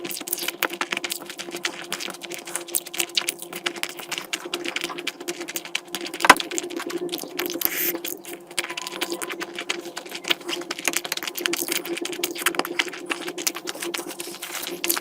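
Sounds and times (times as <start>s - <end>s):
chewing and smacking: 0.0s - 15.0s.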